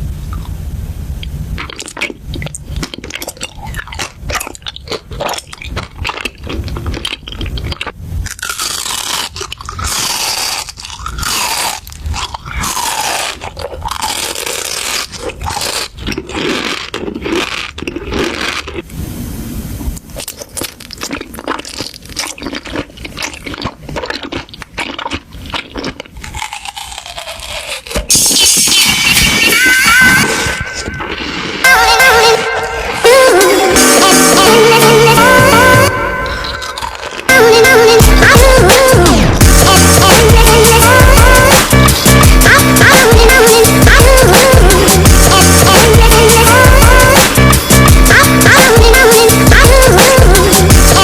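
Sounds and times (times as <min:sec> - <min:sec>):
crunchy biting and chewing: 0:01.2 - 0:19.0, 0:20.0 - 0:33.3, 0:35.9 - 0:51.0
high sliding tones: 0:28.1 - 0:48.6.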